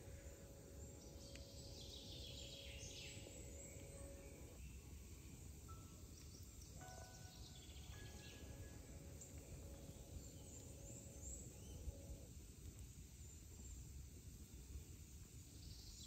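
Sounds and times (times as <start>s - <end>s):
distant bird chirps: 0.0s - 12.3s.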